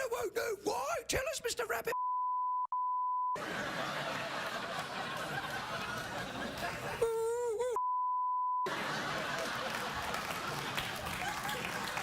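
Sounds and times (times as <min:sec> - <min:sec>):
audience laughing: 0:03.4 - 0:07.2, 0:08.7 - 0:12.0.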